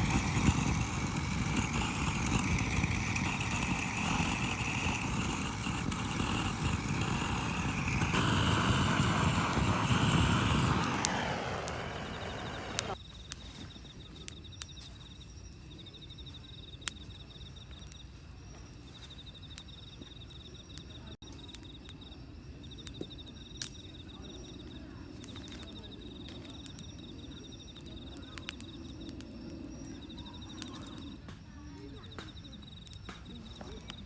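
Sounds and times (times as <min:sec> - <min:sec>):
insect trilling: 0:00.0 - 0:13.0
low outdoor hum: 0:00.0 - 0:13.0
sharp clicks: 0:00.0 - 0:13.0.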